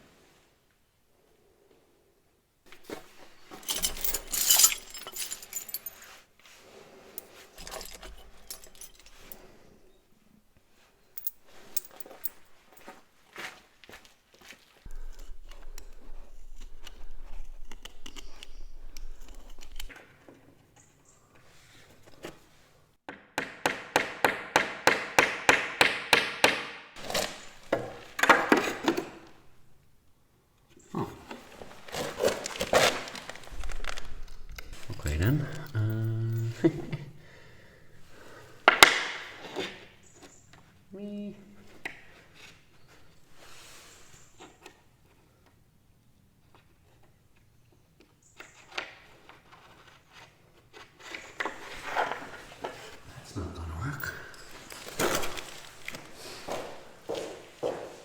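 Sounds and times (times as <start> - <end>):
small metal objects jangling: 3.5 - 6.2, 7.2 - 9.6, 11.1 - 12.9, 33.3 - 36.6
sharp knocks on wood: 23.1 - 26.8.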